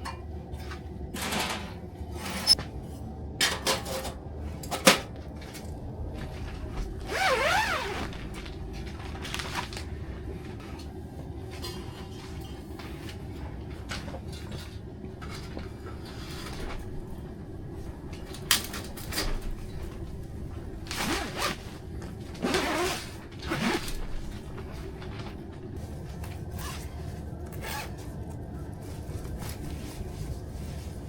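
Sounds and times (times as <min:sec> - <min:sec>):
steady low hum: 0:00.0 - 0:31.0
zipper being pulled: 0:07.0 - 0:08.2, 0:20.9 - 0:21.7, 0:22.4 - 0:24.8.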